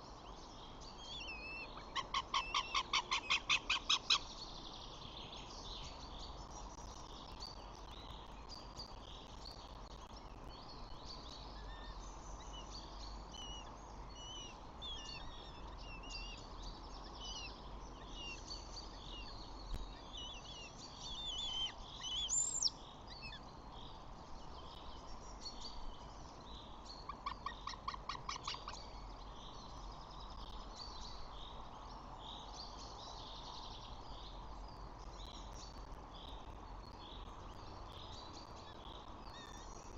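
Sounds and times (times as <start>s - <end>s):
steady background hiss: 0.0s - 39.9s
birds chirping and singing: 0.3s - 6.6s, 11.0s - 31.6s.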